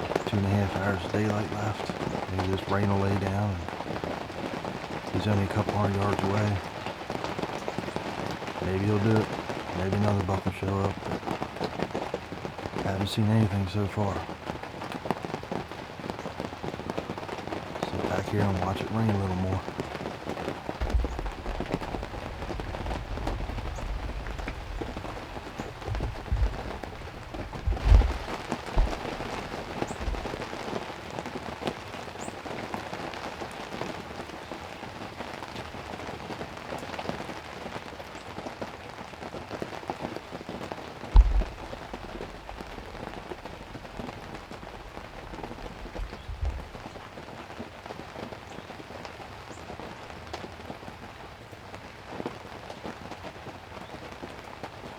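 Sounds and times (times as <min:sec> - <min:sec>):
heavy rain pouring: 0:00.0 - 0:54.9
dull low thumps: 0:20.8 - 0:30.8, 0:41.1 - 0:47.2.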